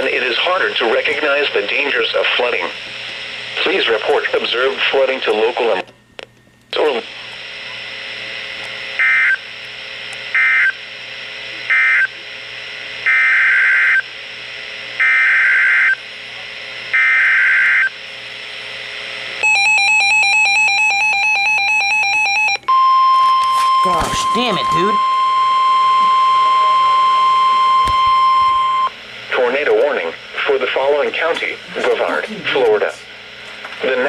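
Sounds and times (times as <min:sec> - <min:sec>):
radio hiss: 0:00.0 - 0:05.9, 0:06.7 - 0:15.0, 0:23.2 - 0:25.2, 0:25.9 - 0:34.0
buzzing two-tone attention signal: 0:19.4 - 0:29.0.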